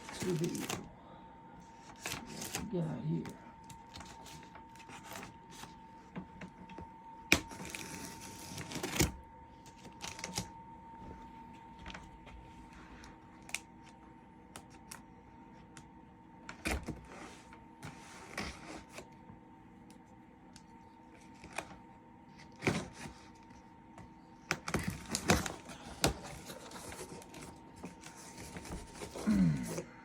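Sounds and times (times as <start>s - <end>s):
faint steady whine: 0.0s - 30.0s
cardboard rustling and scraping: 3.8s - 6.8s, 16.6s - 19.2s, 24.6s - 29.8s.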